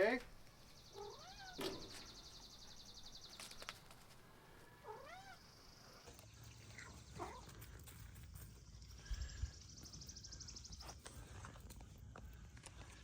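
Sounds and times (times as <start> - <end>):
cat meowing faintly: 1.0 - 1.6.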